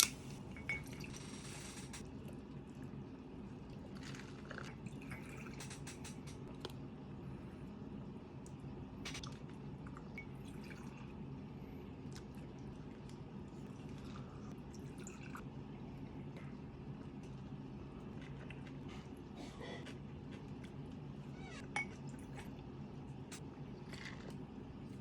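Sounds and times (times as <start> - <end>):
steady low hum: 0.0 - 25.0
wet chewing and mouth sounds: 12.0 - 15.4, 16.3 - 21.0.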